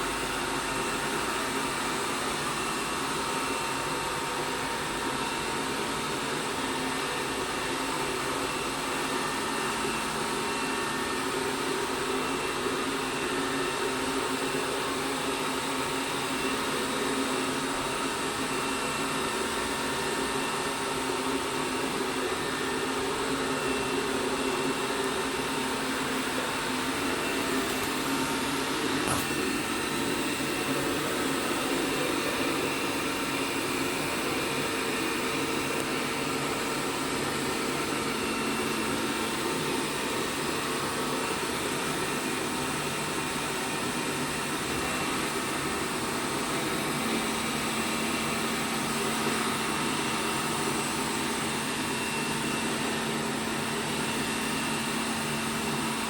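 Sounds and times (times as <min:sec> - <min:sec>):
robot vacuum cleaner humming: 0:21.9 - 0:56.0.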